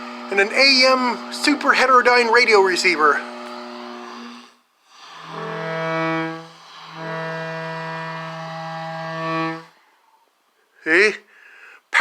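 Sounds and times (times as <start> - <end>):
low buzzing radio interference: 0.0 - 4.6.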